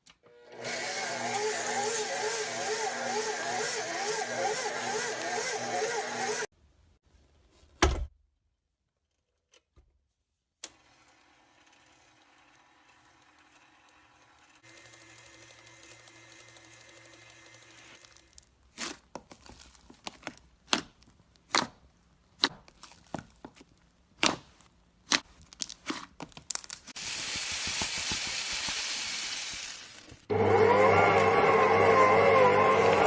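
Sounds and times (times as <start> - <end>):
slime popping and crackling: 18.7 - 27.0.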